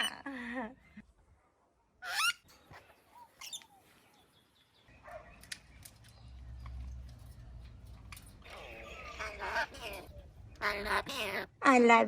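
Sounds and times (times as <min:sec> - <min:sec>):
parrot shrill calls: 0:02.0 - 0:02.5.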